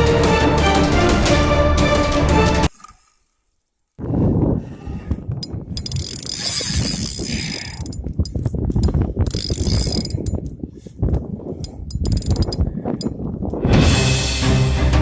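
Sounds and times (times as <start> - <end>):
fishing reel ratcheting clicks: 2.7 - 3.3, 5.7 - 8.0, 9.3 - 10.4, 11.9 - 12.6.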